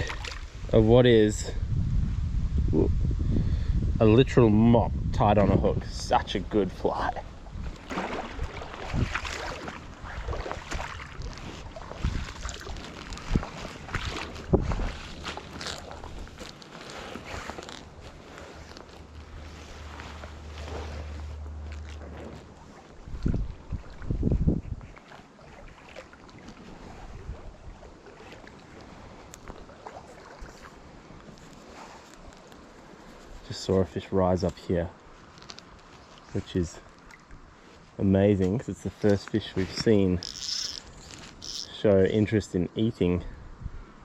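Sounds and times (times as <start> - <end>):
stream water running: 0.0 - 1.4, 6.8 - 43.1
wind buffeting microphone: 0.0 - 16.4, 23.0 - 25.0, 26.8 - 27.8
irregular splashes or knocks: 7.6 - 16.4.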